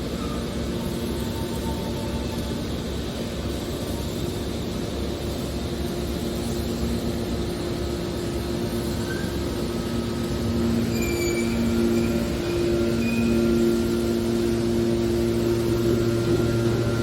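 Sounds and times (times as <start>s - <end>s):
baler motor and pump hum: 0.0s - 17.0s.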